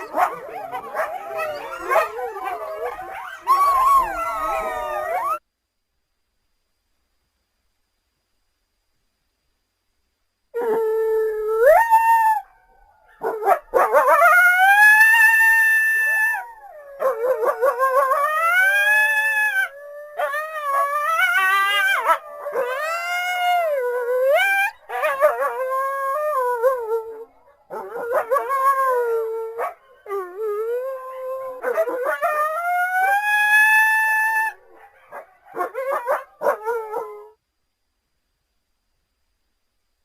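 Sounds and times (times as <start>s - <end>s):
coyotes howling: 0.0s - 5.4s, 10.6s - 37.3s.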